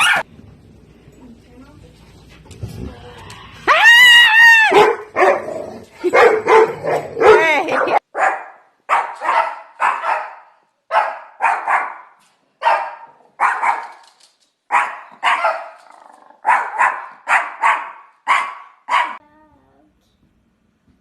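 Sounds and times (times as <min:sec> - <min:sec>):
dog barking: 0:00.0 - 0:00.2, 0:04.7 - 0:14.0, 0:14.7 - 0:15.8, 0:16.4 - 0:19.2.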